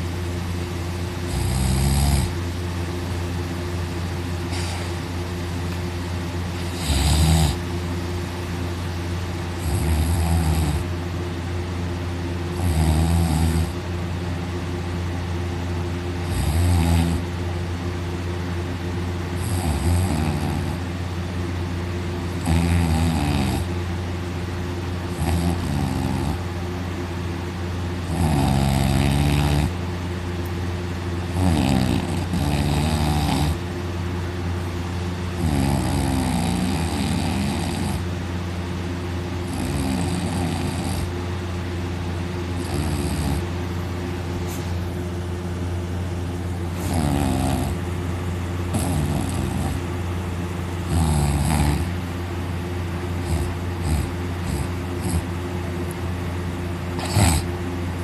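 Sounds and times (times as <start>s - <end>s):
steady low hum: 0.0s - 58.0s
man snoring loudly: 1.3s - 2.4s, 6.7s - 7.7s, 9.6s - 10.9s, 12.6s - 13.8s, 16.2s - 17.2s, 19.4s - 20.9s, 22.4s - 23.7s, 25.1s - 26.4s, 28.0s - 29.8s, 31.3s - 33.6s, 35.4s - 38.1s, 39.4s - 41.2s, 42.6s - 43.5s, 46.8s - 47.8s, 48.7s - 49.8s, 50.8s - 52.0s, 53.2s - 55.3s, 57.0s - 57.5s.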